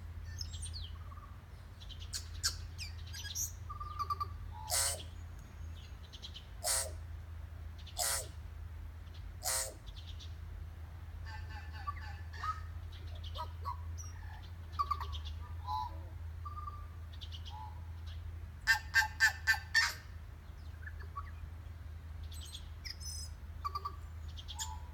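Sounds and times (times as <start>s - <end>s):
bird whistling and gurgling: 2.1s - 5.1s, 6.6s - 7.0s, 8.0s - 8.3s, 9.5s - 9.8s
distant bird answering: 2.1s - 5.3s, 6.6s - 7.0s, 7.9s - 8.4s, 9.4s - 9.9s.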